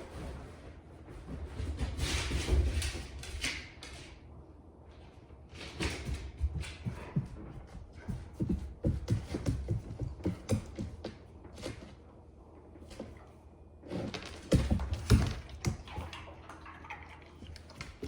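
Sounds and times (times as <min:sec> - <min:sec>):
dog paws tapping on hard floor: 0:00.0 - 0:04.2, 0:05.6 - 0:12.0, 0:14.0 - 0:16.2.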